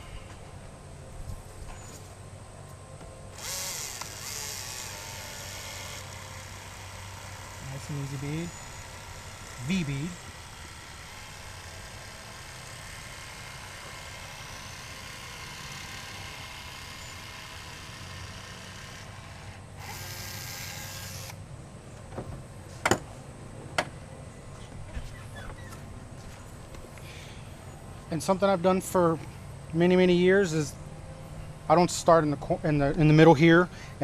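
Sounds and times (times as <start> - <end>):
battery-powered caulk gun running: 3.4 - 21.4.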